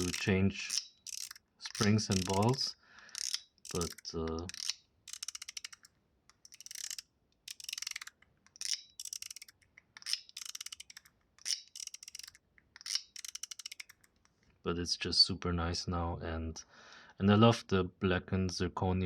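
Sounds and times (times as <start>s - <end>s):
fidget slider clicking: 0.0s - 14.4s.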